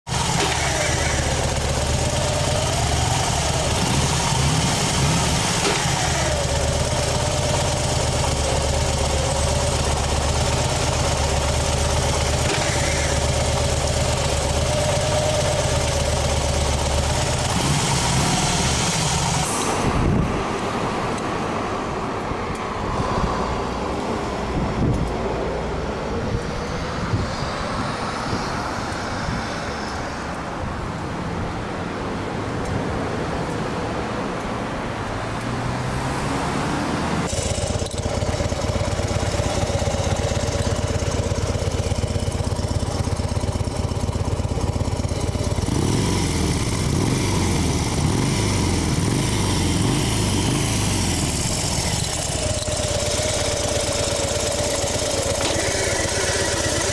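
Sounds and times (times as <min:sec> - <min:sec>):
motorcycle engine running: 0:00.0 - 0:20.3, 0:37.3 - 0:56.9.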